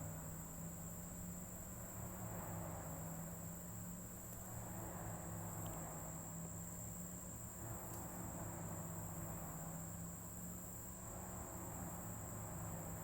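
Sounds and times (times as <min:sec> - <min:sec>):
faint ticks: 0:05.6 - 0:05.9, 0:07.8 - 0:08.1.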